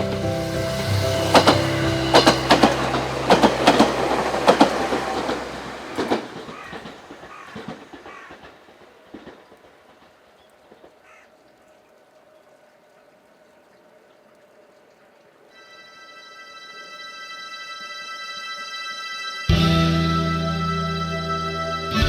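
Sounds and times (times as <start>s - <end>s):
train passing with mechanical hum: 0.0s - 11.0s
wheels clacking over rail joints: 0.0s - 11.0s.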